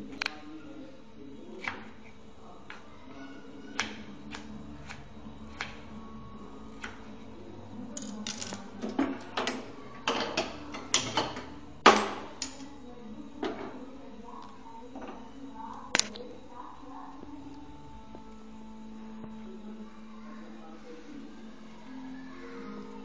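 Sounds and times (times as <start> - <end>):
kitchen things clattering: 7.9 - 12.8.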